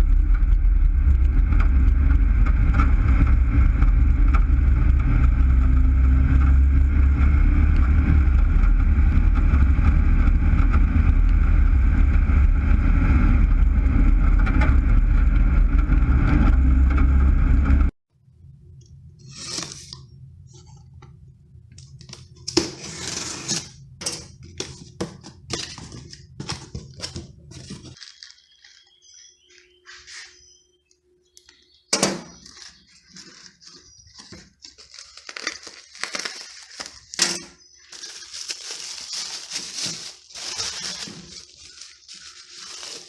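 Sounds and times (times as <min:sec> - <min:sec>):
low steady hum: 0:00.0 - 0:43.0
hand tools clicking and scraping: 0:22.4 - 0:28.0, 0:32.0 - 0:43.0.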